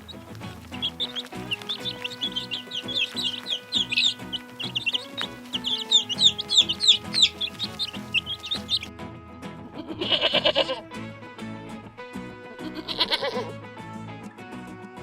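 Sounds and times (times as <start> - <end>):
chickens calling: 0.0 - 8.9, 12.6 - 13.5
background music: 0.0 - 15.0.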